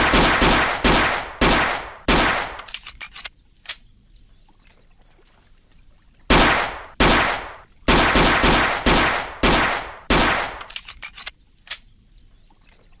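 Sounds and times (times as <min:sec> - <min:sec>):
pistol shots echoing: 0:00.0 - 0:02.7, 0:06.3 - 0:10.7
light clicks: 0:02.6 - 0:03.9, 0:10.6 - 0:11.9.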